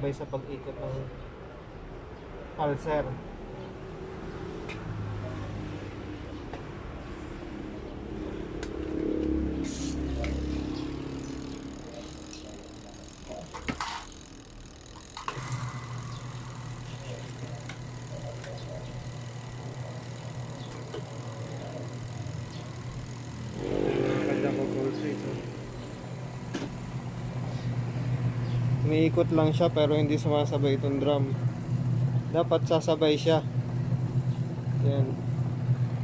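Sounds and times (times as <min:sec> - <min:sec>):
washing machine motor humming: 0:06.8 - 0:36.0.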